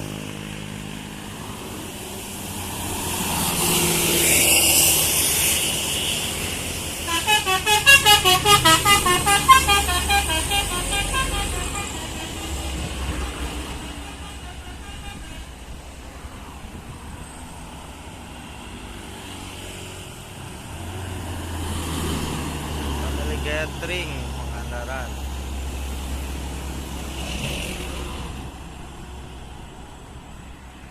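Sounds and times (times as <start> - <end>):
vehicle engine: 0.0 - 30.8
bus engine rumble: 0.0 - 30.9
bus horn playing warbling tune: 6.9 - 15.8.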